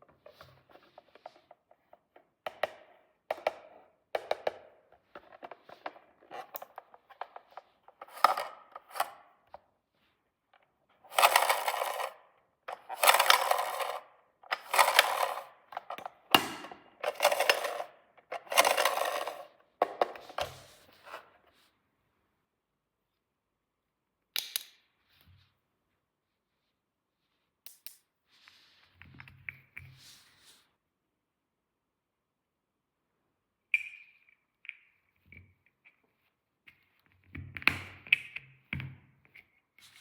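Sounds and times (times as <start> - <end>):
plastic toy pieces clicking: 11.1 - 16.0, 17.0 - 19.5.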